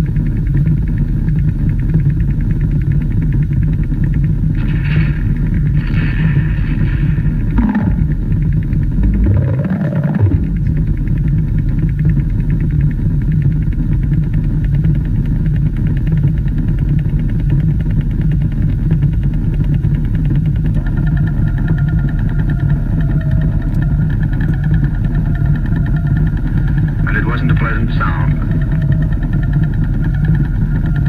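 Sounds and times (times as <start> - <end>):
radio low drone: 4.5 - 11.8, 20.6 - 31.0.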